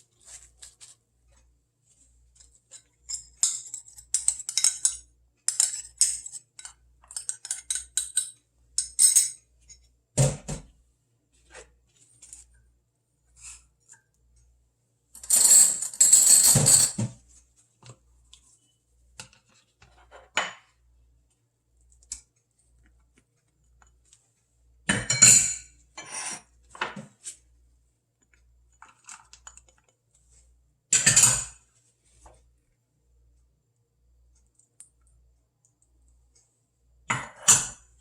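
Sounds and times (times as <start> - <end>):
utensils and dishes clattering: 15.2 - 17.1.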